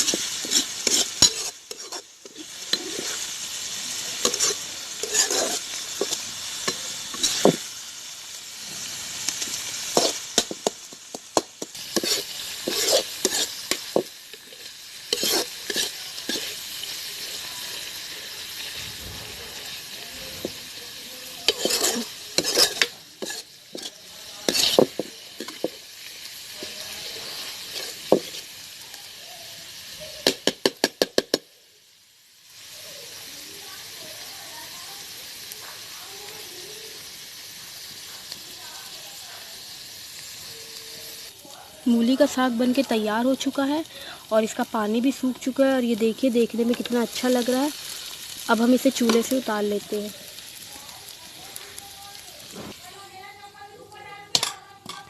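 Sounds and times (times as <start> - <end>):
spoon stirring and scraping a pan: 0.0 - 7.7, 8.6 - 28.7, 54.2 - 55.0
food sizzling: 0.0 - 55.0.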